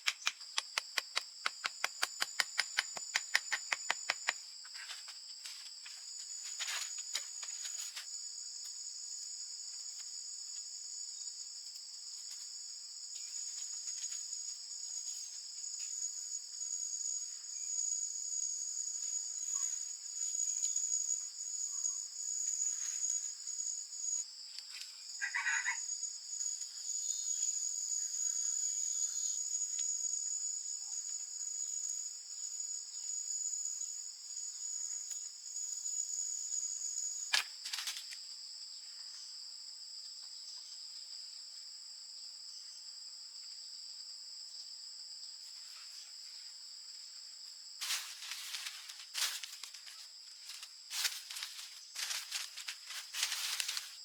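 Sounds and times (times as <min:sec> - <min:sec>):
sharp snap: 0:00.0 - 0:04.4
insects chorus: 0:00.0 - 0:54.0
brief rustle: 0:37.3 - 0:38.2, 0:47.8 - 0:54.0.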